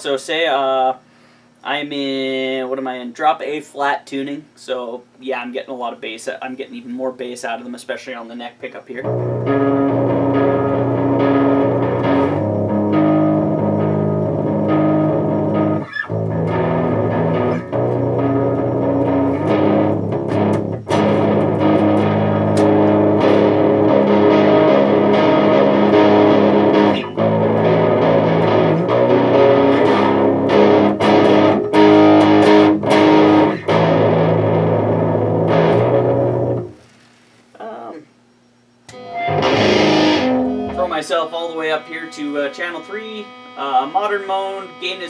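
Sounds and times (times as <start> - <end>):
distorted electric guitar riffs: 9.0 - 36.8, 38.9 - 45.0.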